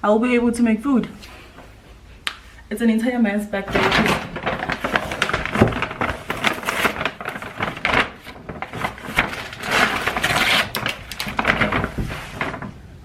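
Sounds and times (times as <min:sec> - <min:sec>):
shopping bags crinkling: 0:03.6 - 0:13.0.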